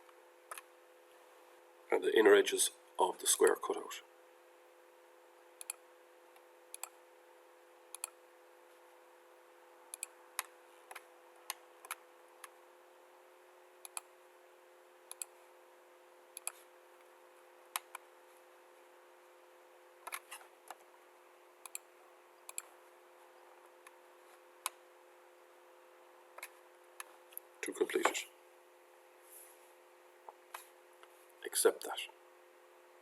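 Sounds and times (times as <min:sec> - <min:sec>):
faint steady hum: 0:00.0 - 0:33.0
computer mouse clicking: 0:05.6 - 0:05.8, 0:06.7 - 0:07.0, 0:07.9 - 0:08.2, 0:09.9 - 0:12.6, 0:13.8 - 0:14.1, 0:15.1 - 0:15.4, 0:16.4 - 0:16.6, 0:20.0 - 0:20.8, 0:21.6 - 0:21.9, 0:22.5 - 0:22.7.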